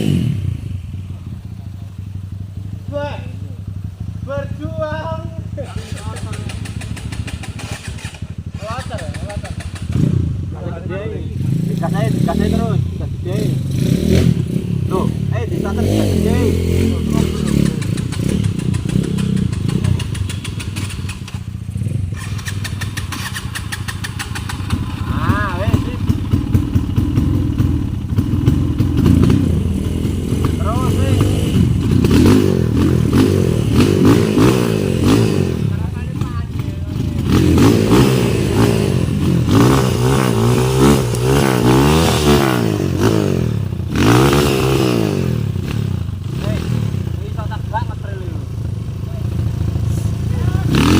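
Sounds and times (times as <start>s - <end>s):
motorcycle engine at high revs: 0.0s - 50.9s.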